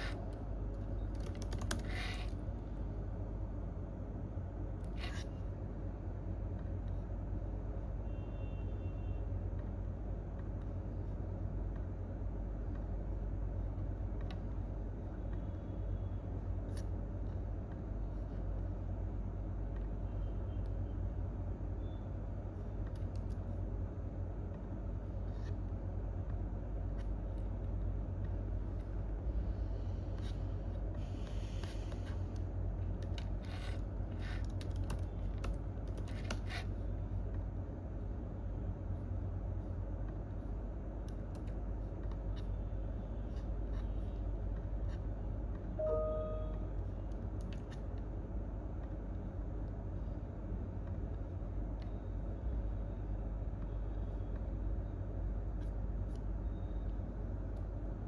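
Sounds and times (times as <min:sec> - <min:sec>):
low room tone rumble: 0:00.0 - 0:58.0
keyboard typing: 0:00.9 - 0:02.3.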